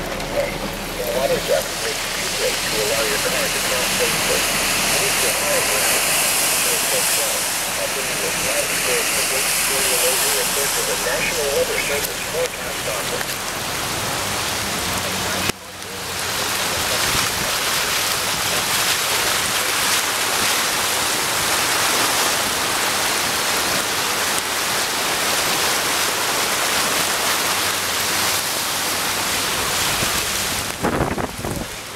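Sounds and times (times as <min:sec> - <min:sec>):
rushing floodwater: 0:00.0 - 0:31.9.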